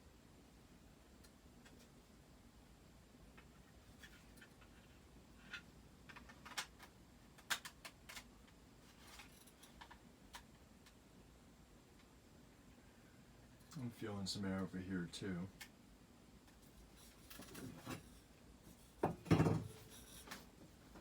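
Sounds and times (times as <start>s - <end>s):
ceiling fan running quietly: 0.0s - 21.0s
faint irregular clicks: 5.5s - 11.0s.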